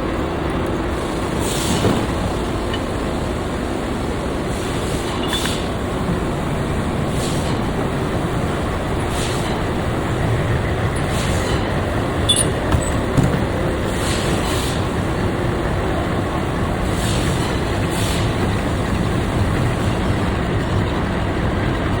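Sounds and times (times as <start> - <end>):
metalworking machine running: 1.7 - 15.5
metallic clinks: 12.2 - 13.2.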